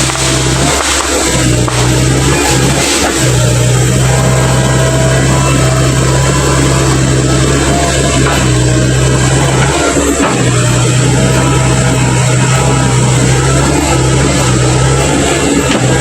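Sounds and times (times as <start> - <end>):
excavator diesel engine running: 0.0 - 16.0.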